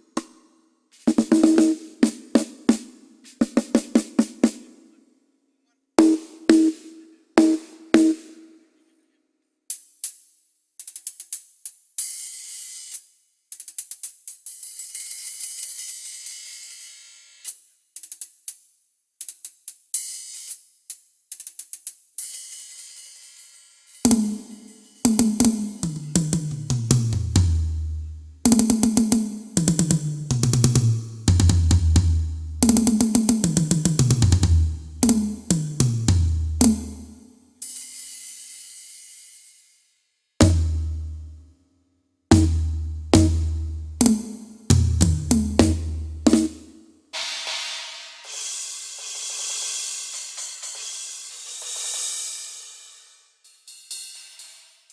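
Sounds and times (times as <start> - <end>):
tom drum fills: 6.0 - 8.3, 24.1 - 37.2, 40.4 - 41.4, 42.3 - 52.1
hi-hat and cymbal strokes: 9.7 - 41.4, 42.3 - 54.9.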